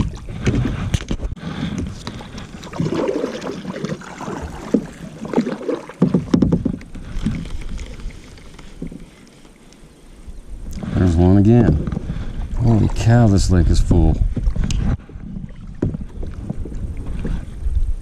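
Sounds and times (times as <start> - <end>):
water sloshing against boat hull: 0.0 - 9.9, 10.7 - 18.0
knocking against hull: 4.6 - 7.4, 15.7 - 16.8.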